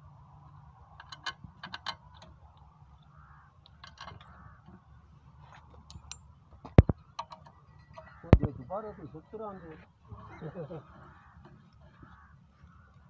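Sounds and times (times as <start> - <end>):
metallic clicks of hand tools: 1.0 - 2.4.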